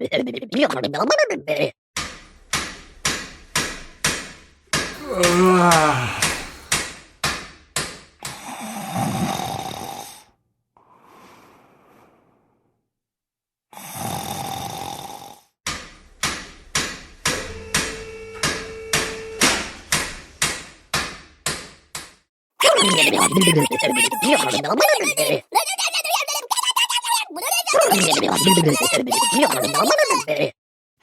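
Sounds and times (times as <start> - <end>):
snore-like breaths: 5.0 - 6.8, 8.3 - 12.8, 13.7 - 15.6.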